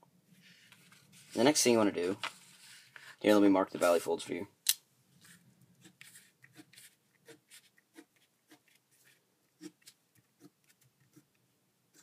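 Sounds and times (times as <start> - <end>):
pen scratching on paper: 5.2 - 12.0.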